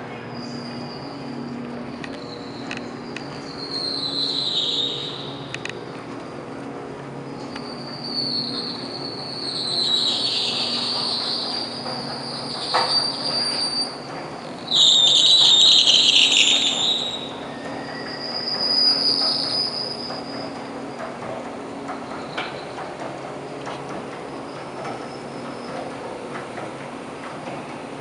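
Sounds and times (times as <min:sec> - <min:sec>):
escalator screeching: 0:00.0 - 0:06.4, 0:07.2 - 0:20.8.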